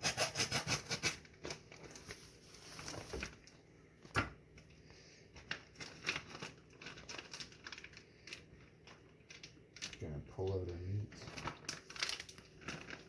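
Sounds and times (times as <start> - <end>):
plastic packaging crinkling: 1.2 - 3.6, 5.3 - 13.0.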